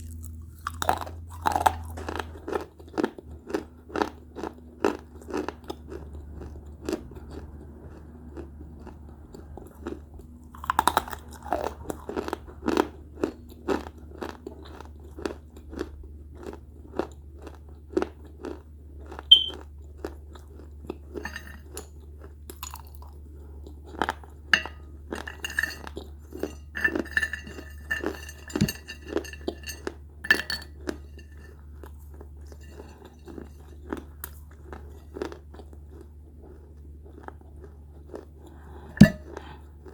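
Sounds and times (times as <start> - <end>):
steady low hum: 0.0 - 2.9, 24.4 - 31.5
crunching and chewing clay pots: 0.0 - 39.9.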